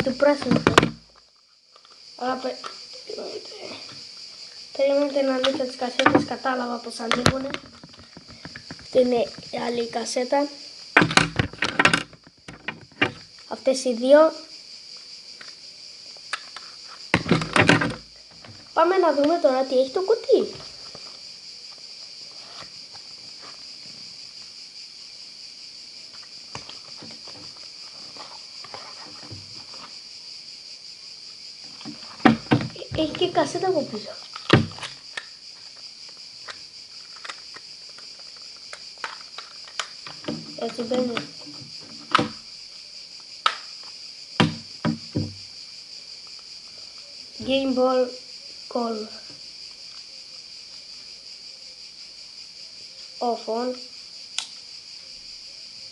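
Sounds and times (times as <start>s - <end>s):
high-pitched hiss: 0.0s - 55.9s
plastic phone parts clicking: 36.5s - 41.2s.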